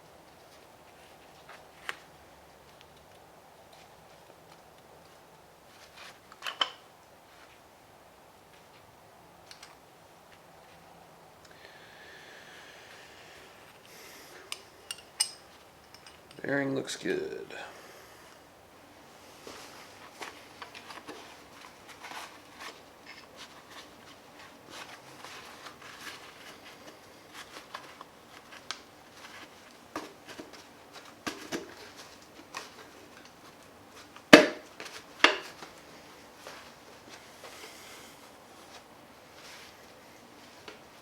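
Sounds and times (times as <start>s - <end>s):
metal tools clicking and knocking: 14.5s - 16.5s.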